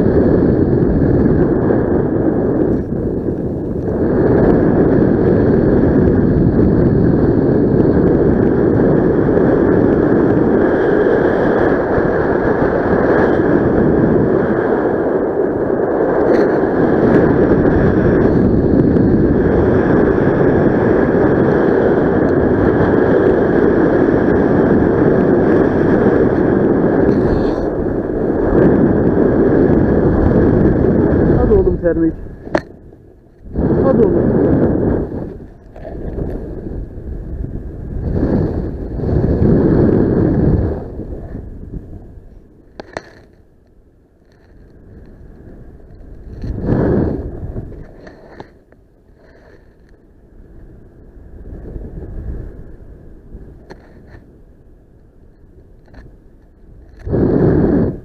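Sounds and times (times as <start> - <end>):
wind buffeting microphone: 0.0 - 58.0.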